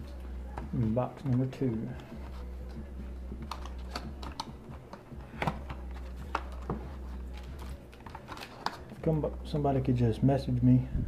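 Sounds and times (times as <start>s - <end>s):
sharp clicks and taps: 3.4s - 6.5s.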